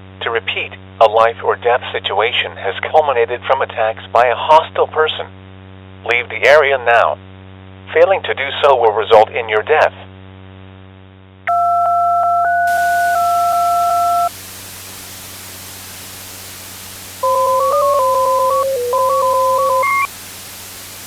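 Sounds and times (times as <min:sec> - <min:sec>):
low hum: 0:12.7 - 0:21.0
static hiss: 0:12.7 - 0:21.0
synthesized electronic beeps: 0:17.2 - 0:20.2.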